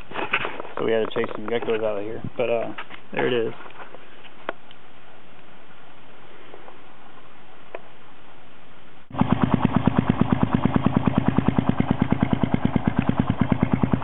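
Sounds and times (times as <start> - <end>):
faint steady hiss: 0.0 - 9.1
motorcycle engine idling: 9.1 - 14.0.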